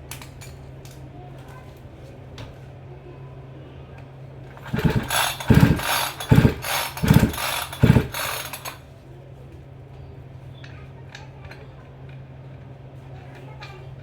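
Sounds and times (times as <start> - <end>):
engine turning over: 4.5 - 8.8
chainsaw recoil starter pulls: 4.6 - 8.8.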